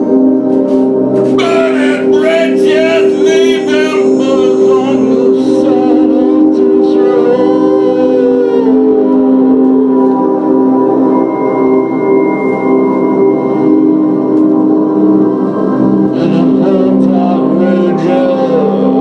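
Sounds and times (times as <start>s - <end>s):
drone ambient music: 0.0s - 19.0s
wavering voice-like line: 1.3s - 9.8s.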